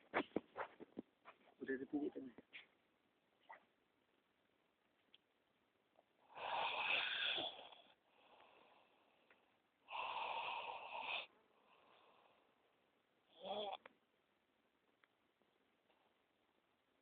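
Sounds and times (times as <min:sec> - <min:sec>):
person snoring: 0:06.3 - 0:08.0, 0:09.9 - 0:11.3, 0:13.3 - 0:13.9.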